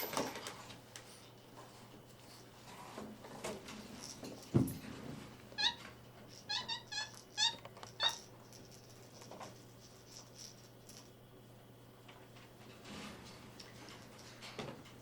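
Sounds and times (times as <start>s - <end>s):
thump: 4.5s - 4.8s
monkey high-pitched chirps: 6.5s - 8.2s.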